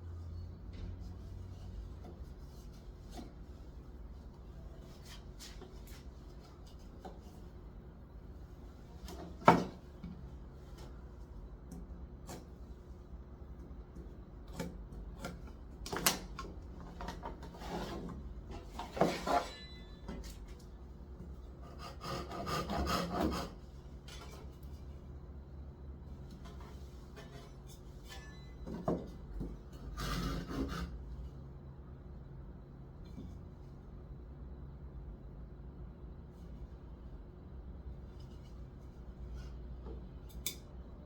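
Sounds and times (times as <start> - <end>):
scraping strokes on wood: 21.6 - 23.6, 29.7 - 31.0.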